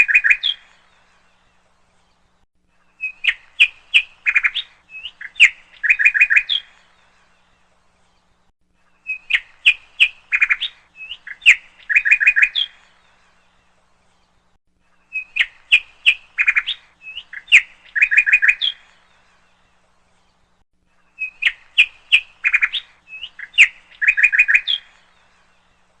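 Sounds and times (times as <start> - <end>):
bird chirping and trilling: 0.0 - 1.1, 2.9 - 7.4, 9.0 - 13.5, 15.0 - 19.6, 21.1 - 25.8.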